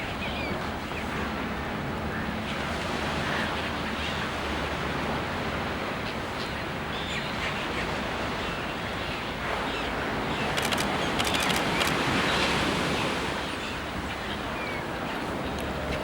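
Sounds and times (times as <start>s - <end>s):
sea surf washing in: 9.4s - 14.1s
sharp clicks: 10.6s - 12.0s.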